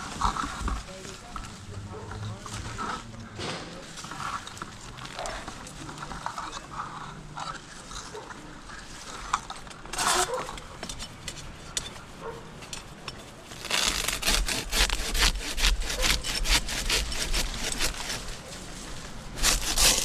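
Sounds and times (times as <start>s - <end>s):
handsaw cutting wood: 13.6s - 18.6s, 19.4s - 20.0s.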